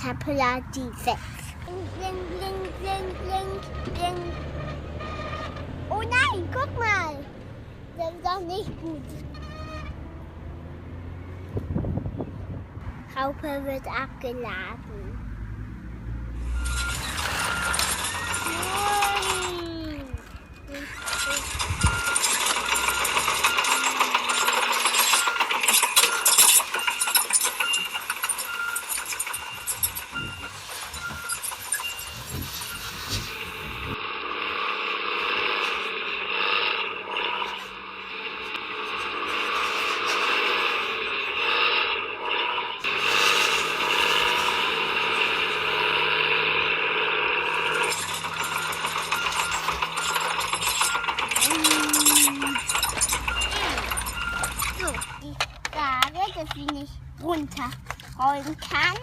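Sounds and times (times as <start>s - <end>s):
plastic toy tracks clattering: 16.5s - 33.5s, 47.4s - 59.0s.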